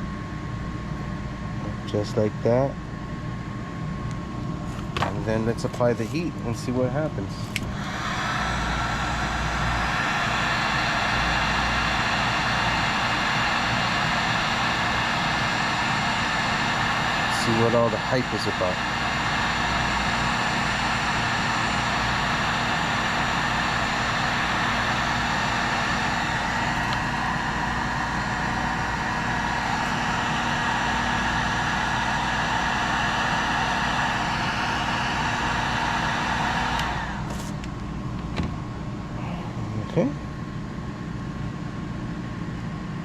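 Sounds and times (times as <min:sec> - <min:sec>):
heat gun whirring: 0:07.4 - 0:37.7.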